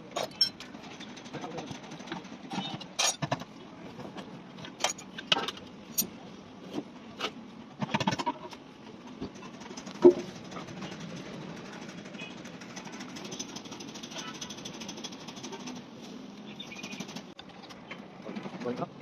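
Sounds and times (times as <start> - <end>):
metal tools clinking on engine parts: 0.0 - 3.4, 4.6 - 6.2.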